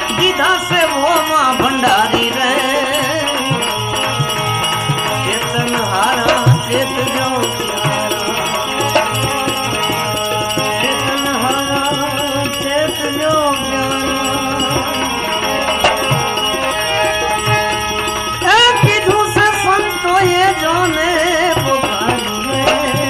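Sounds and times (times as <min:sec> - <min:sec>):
devotional melody over drone: 0:00.0 - 0:23.0
steady percussion beat: 0:00.0 - 0:23.0.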